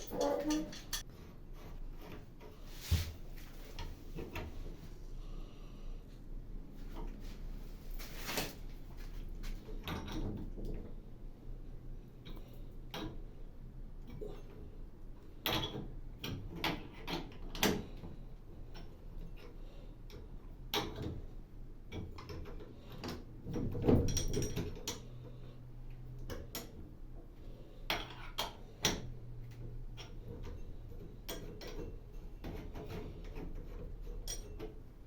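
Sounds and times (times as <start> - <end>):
tools and parts clicking: 0.0 - 1.1, 31.3 - 34.8.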